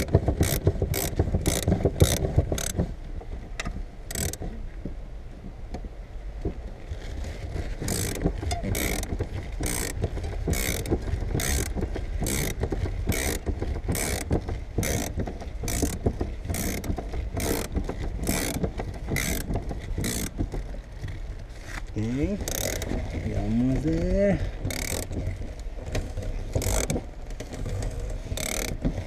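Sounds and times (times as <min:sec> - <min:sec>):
ratcheting tool winding cutting wire: 0:00.0 - 0:02.8, 0:04.1 - 0:04.4, 0:07.8 - 0:20.3, 0:22.0 - 0:23.6, 0:24.6 - 0:25.2, 0:26.6 - 0:27.0, 0:28.3 - 0:28.8.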